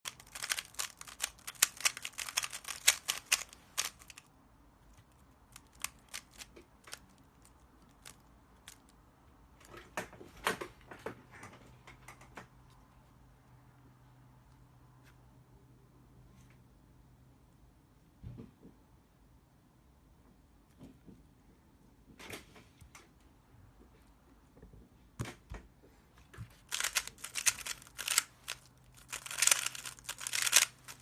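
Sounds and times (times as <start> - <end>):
puzzle cube plastic clicks: 0.1 - 4.3, 4.9 - 9.0, 26.5 - 31.0.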